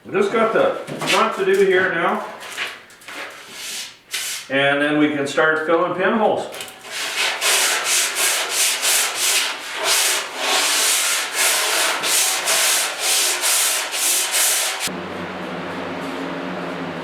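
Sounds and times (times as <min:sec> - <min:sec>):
sandpaper rubbing on steel: 0:06.8 - 0:14.9
steady low hum: 0:14.9 - 0:17.0.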